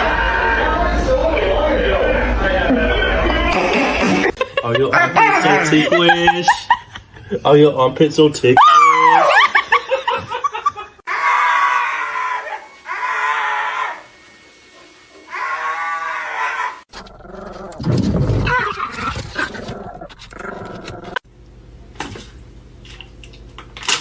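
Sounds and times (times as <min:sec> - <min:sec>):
low noisy mixed sound: 0:00.0 - 0:08.6.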